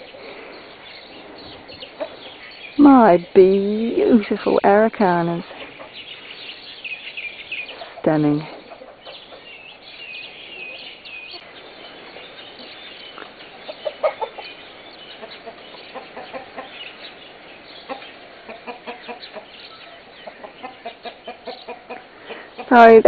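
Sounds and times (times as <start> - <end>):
chickens clucking: 0.0 - 3.2, 4.1 - 22.9
chicken squawk: 13.2 - 14.5.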